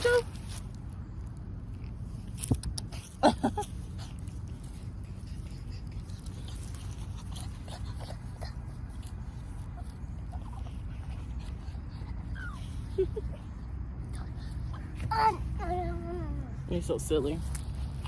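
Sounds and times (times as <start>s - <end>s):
puppy whimpering: 9.4s - 16.7s.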